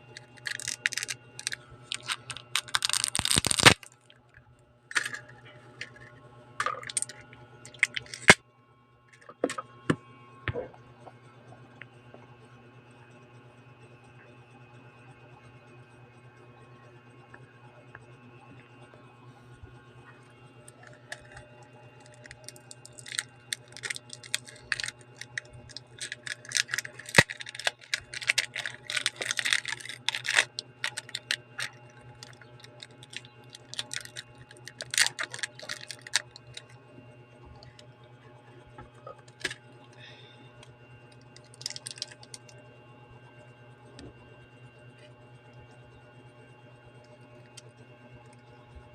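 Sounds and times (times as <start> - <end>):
steady low hum: 0.0 - 48.9
hand tools clicking and scraping: 0.2 - 3.8, 4.9 - 6.0, 6.6 - 8.4, 22.1 - 36.2.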